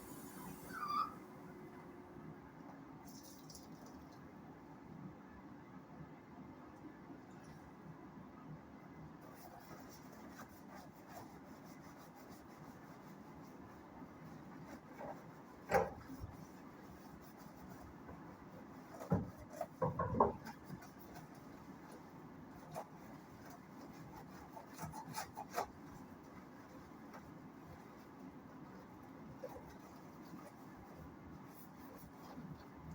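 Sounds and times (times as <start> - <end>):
rubbing and scrubbing: 9.2 - 32.9
sharp knocks and clatters: 19.0 - 20.6.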